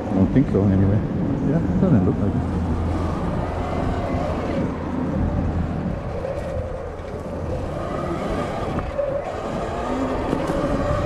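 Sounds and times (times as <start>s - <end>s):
tyres rumbling on dirt: 0.0s - 11.0s
wind on microphone: 0.0s - 11.0s
electric motor whine: 2.2s - 11.0s.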